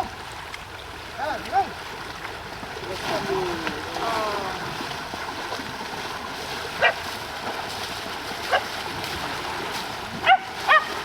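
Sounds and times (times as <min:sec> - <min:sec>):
running water rushing: 0:00.0 - 0:11.0
dog barking: 0:10.2 - 0:10.9.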